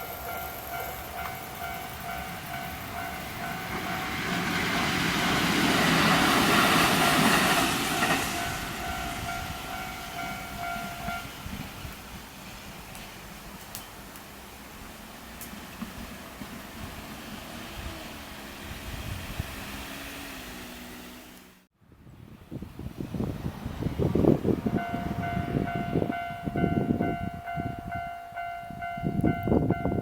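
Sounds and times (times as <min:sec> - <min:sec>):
train passing: 0:00.0 - 0:21.7, 0:22.4 - 0:30.0
electronic level-crossing bell: 0:08.4 - 0:11.4, 0:24.7 - 0:30.0.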